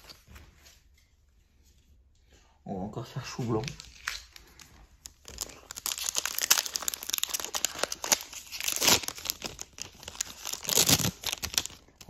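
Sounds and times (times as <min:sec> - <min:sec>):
foil wrapper crinkling and tearing: 0:03.5 - 0:12.0.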